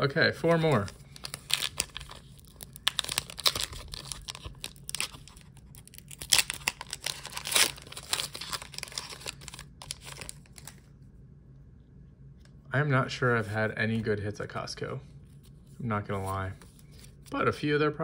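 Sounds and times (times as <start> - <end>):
foil wrapper tearing and crinkling: 0.5 - 10.8.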